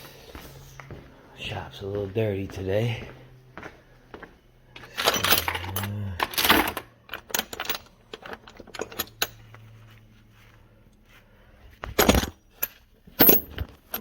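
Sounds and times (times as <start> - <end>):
metal tools clinking and rattling: 4.8 - 9.7, 11.8 - 14.0.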